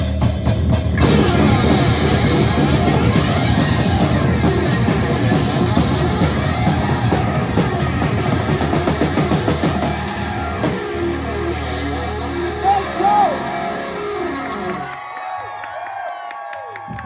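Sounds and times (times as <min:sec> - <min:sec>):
drum kit: 0:00.0 - 0:11.6
distorted electric guitar: 0:00.0 - 0:15.0.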